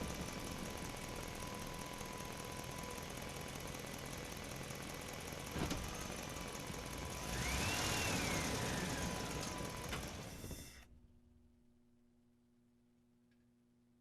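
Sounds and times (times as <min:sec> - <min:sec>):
truck engine idling: 0:00.0 - 0:10.7
rising and falling whine: 0:07.0 - 0:10.5.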